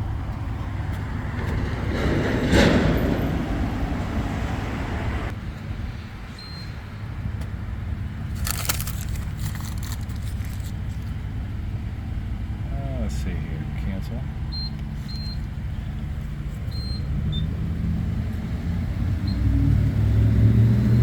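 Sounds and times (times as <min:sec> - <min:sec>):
vehicle engine rumbling: 0:00.0 - 0:21.0.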